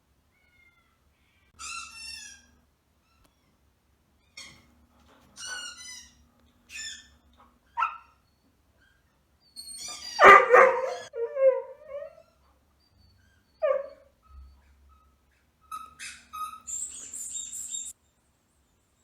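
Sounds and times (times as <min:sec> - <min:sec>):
husky yowling: 0:09.9 - 0:12.4, 0:13.4 - 0:14.2.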